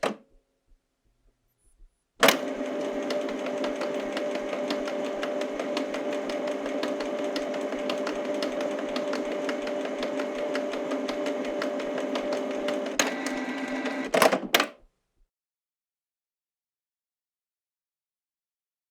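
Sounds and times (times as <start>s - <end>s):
printer motor whirring: 2.2s - 14.4s.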